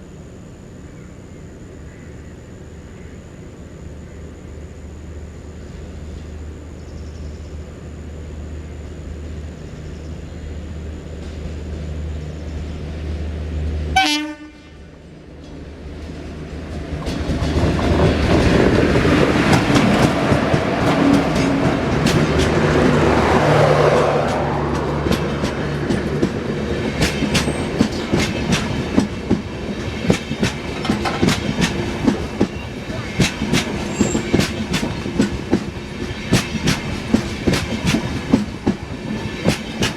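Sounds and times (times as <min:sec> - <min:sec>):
train passing with loud rush: 0:00.0 - 0:39.9
wheels clattering over rail joints: 0:15.4 - 0:39.9.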